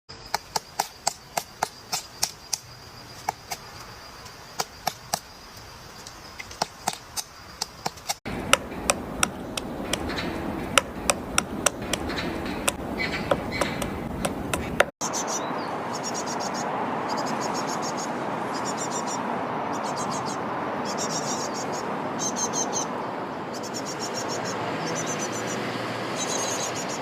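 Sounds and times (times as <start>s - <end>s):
woodpecker pecking wood: 0.1s - 3.7s, 4.5s - 14.9s
background hiss: 0.2s - 9.8s.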